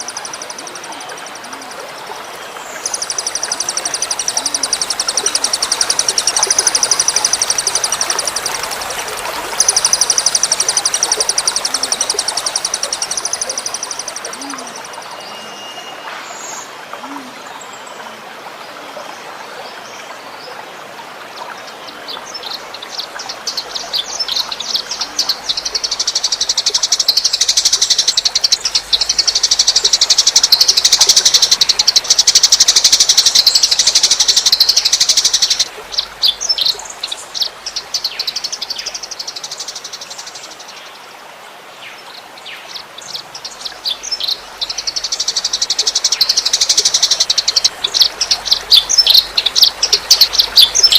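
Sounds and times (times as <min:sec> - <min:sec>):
songbird rapid high chirps: 0:00.0 - 0:16.6, 0:22.7 - 0:40.3, 0:42.7 - 0:50.9
trickle of running water: 0:00.0 - 0:50.9.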